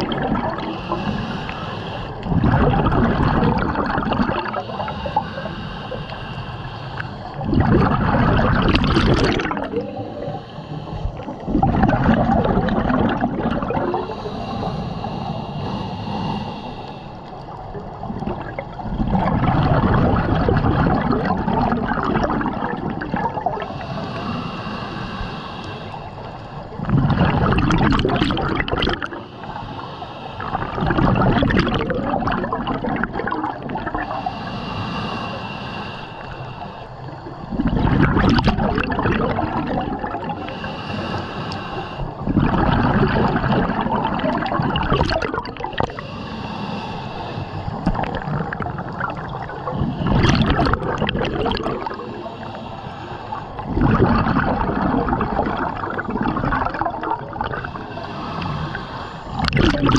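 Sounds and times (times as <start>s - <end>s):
exhaled bubbles gurgling underwater: 0.0s - 59.9s
regulator inhalation hiss: 0.7s - 2.2s, 4.6s - 7.3s, 9.8s - 11.3s, 13.9s - 17.5s, 23.6s - 26.7s, 29.1s - 30.8s, 34.0s - 37.4s, 40.2s - 42.2s, 45.8s - 50.1s, 51.8s - 53.6s, 57.5s - 59.4s.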